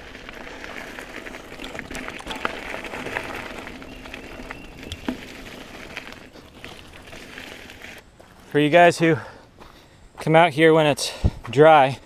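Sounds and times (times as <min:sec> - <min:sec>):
footsteps crunching on leaf litter: 0:00.0 - 0:09.0.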